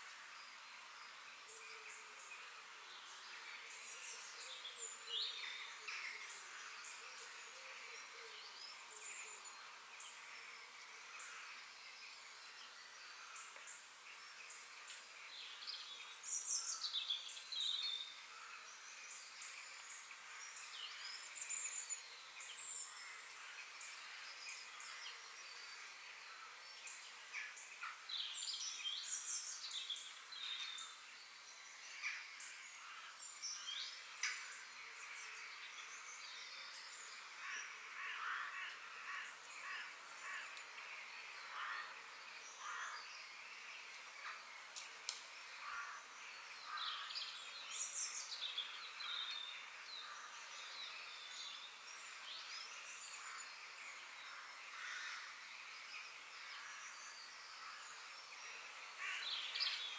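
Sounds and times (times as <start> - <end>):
songbirds chirping and singing: 0.0 - 59.9.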